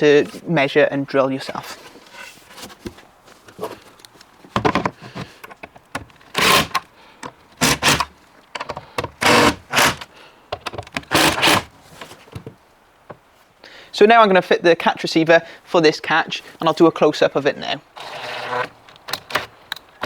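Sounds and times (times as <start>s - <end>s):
screws driven into plywood: 6.0s - 6.9s, 7.6s - 10.1s, 10.8s - 11.7s, 18.0s - 19.6s.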